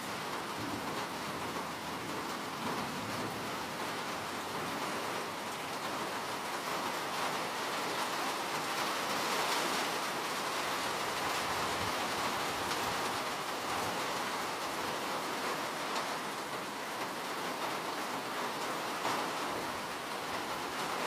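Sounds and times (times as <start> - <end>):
steady rain: 0.0 - 21.0.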